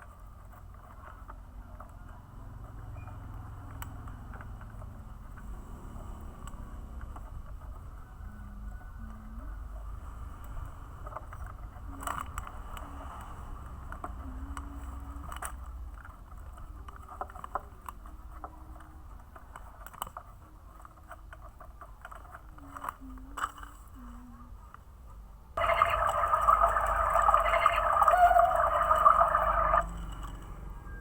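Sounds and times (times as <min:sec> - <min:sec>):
faint low hum: 0:00.0 - 0:31.0
plastic parts clicking and rattling: 0:13.8 - 0:24.0.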